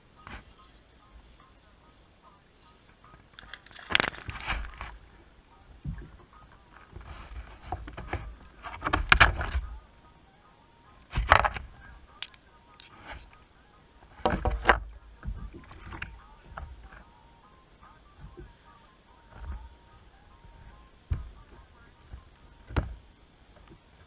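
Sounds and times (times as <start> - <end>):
kayak knocking: 5.8 - 9.8, 11.1 - 11.8, 14.2 - 17.2, 19.2 - 23.9.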